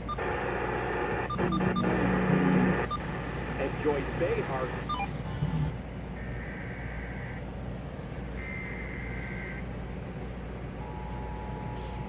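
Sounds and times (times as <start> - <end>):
steady attention tone: 0.0 - 5.4
radio hum and hiss: 0.0 - 12.0
buzzy digital data warble: 0.9 - 5.1.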